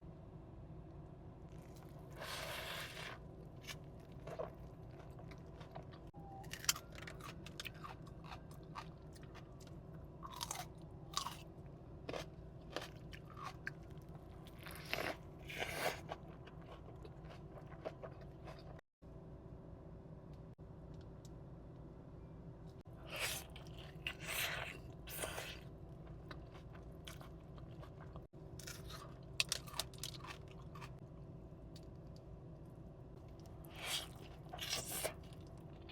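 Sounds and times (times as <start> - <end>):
person chewing crunchy food: 1.5 - 18.8, 23.0 - 31.0, 33.4 - 35.9.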